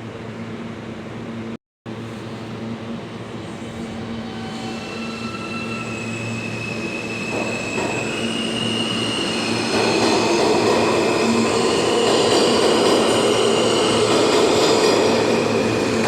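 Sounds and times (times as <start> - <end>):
subway train rumble: 0.0 - 16.0
high wheel squeals: 3.5 - 12.1.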